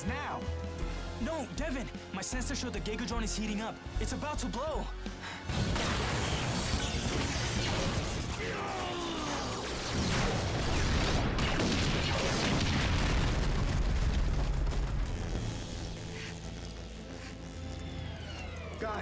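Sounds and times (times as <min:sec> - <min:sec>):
rumbling explosion: 0:09.9 - 0:15.9
electronic whine falling in pitch: 0:14.8 - 0:19.0.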